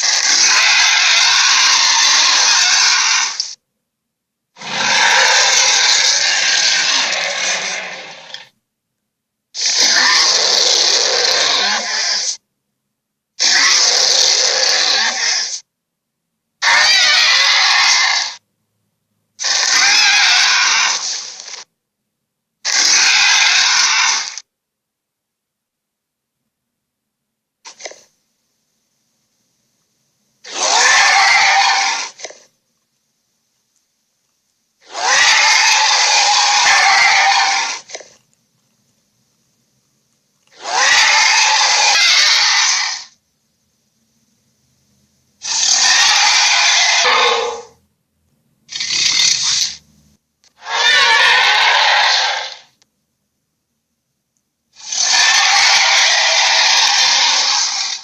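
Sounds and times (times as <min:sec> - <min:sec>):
monster roars: 0:00.0 - 0:03.4, 0:04.6 - 0:08.5, 0:09.6 - 0:12.4, 0:13.4 - 0:15.6, 0:16.6 - 0:18.4, 0:30.5 - 0:32.3, 0:34.9 - 0:38.0, 0:40.6 - 0:43.1, 0:45.4 - 0:47.7, 0:50.6 - 0:52.6, 0:54.8 - 0:58.0.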